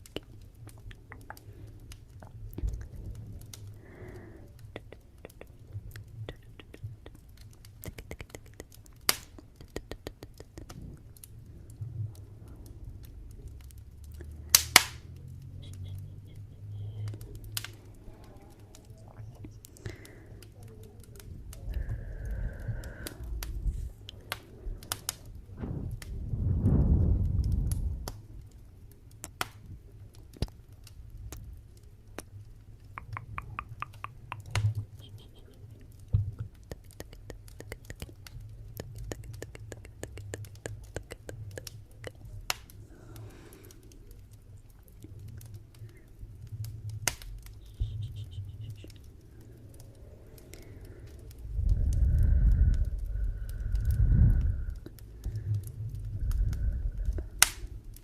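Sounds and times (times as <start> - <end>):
low fire rumble: 0.0 - 58.0
wood fire crackling and popping: 0.0 - 58.0.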